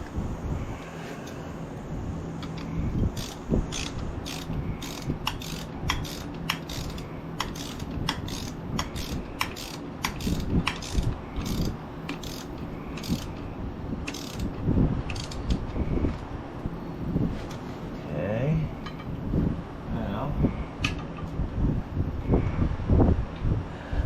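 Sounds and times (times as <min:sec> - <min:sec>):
socket ratchet clicking: 0:02.4 - 0:13.4, 0:14.1 - 0:14.5, 0:15.1 - 0:15.6.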